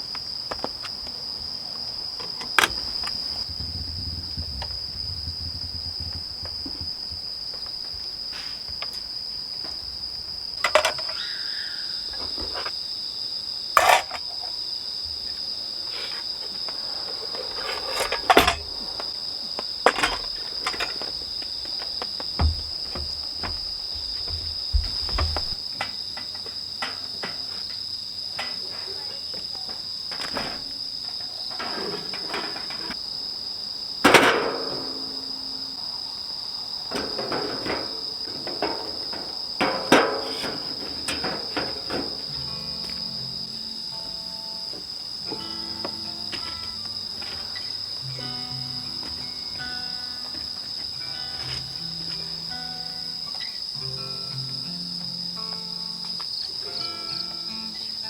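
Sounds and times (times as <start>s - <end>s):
crickets trilling: 0.0s - 58.0s
sharp clicks and knocks: 2.2s - 8.1s, 36.9s - 43.0s.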